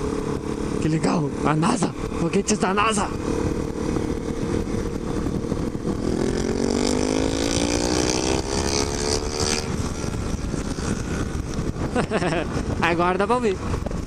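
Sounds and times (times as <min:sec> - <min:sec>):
motorcycle engine accelerating: 0:00.0 - 0:14.0
wind and road noise: 0:00.0 - 0:14.0.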